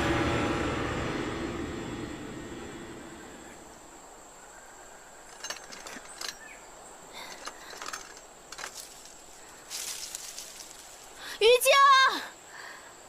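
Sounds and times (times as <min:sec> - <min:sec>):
rustling: 0:05.2 - 0:11.2.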